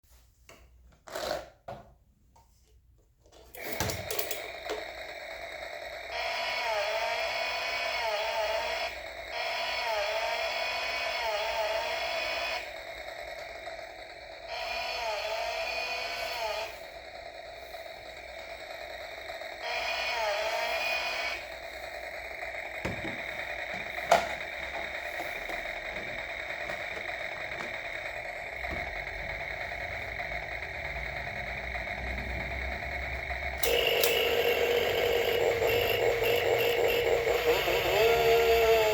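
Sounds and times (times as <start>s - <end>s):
toy chainsaw electric whir: 3.6s - 38.9s
warbling engine-revving effect: 28.0s - 38.9s.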